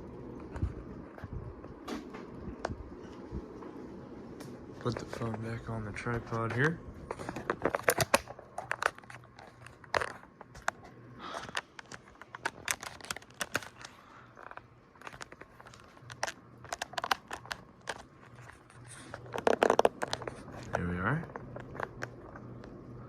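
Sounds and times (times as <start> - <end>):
ceiling fan motor humming: 0.0 - 23.0
phone being handled: 7.0 - 22.8.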